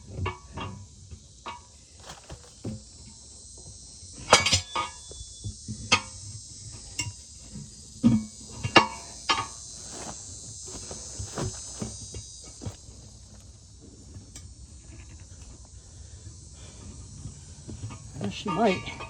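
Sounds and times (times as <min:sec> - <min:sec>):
metal tools clanking on rim: 0:04.3 - 0:05.0.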